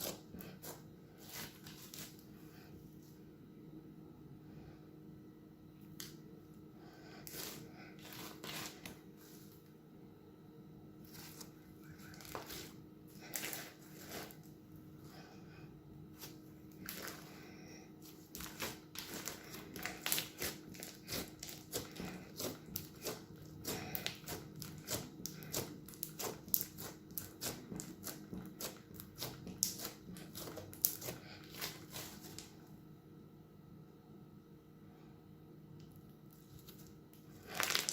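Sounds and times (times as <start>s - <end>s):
crunchy slime crackling pops: 18.3s - 32.4s, 37.4s - 37.9s.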